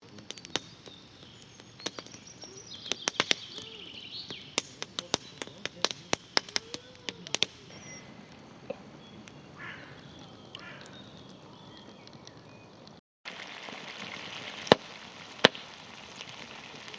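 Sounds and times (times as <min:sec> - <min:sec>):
campfire crackling and popping: 0:00.0 - 0:16.9
faint bird chirps: 0:00.3 - 0:05.6, 0:06.4 - 0:12.8.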